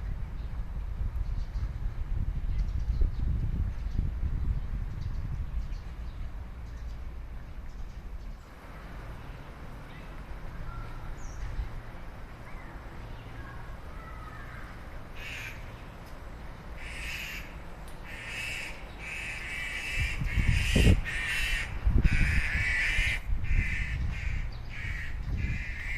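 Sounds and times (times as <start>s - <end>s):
bird short repeated calls: 14.0s - 15.8s.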